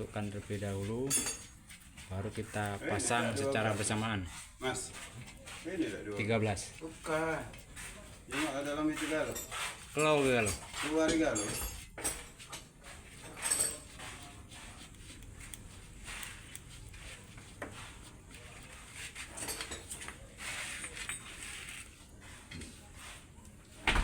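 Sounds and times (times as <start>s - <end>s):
metal parts clinking and knocking: 1.0s - 1.6s.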